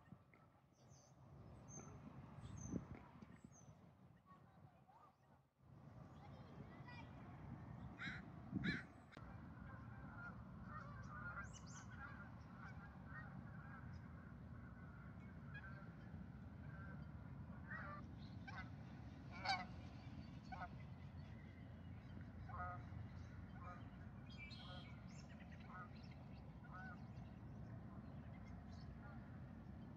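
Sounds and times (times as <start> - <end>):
geese honking: 19.3 - 19.7.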